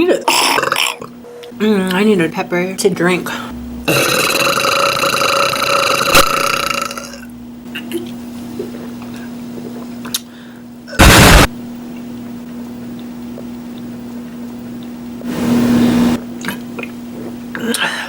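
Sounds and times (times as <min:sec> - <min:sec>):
low steady hum: 0:00.0 - 0:18.0
distorted burping: 0:00.3 - 0:01.2, 0:03.8 - 0:07.3, 0:10.9 - 0:11.5
loud clipped blast: 0:11.0 - 0:11.6.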